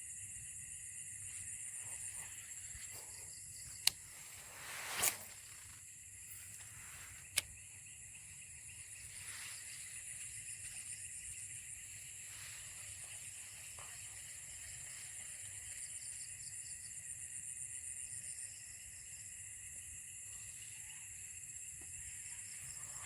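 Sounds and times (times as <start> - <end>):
insects trilling: 0.0 - 23.0
sharp click: 7.3 - 7.5.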